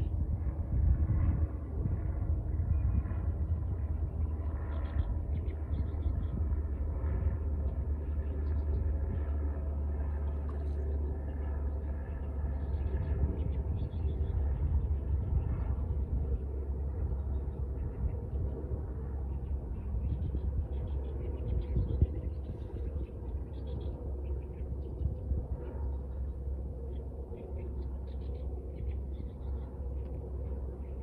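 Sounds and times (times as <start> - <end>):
wind buffeting microphone: 0.0 - 31.0.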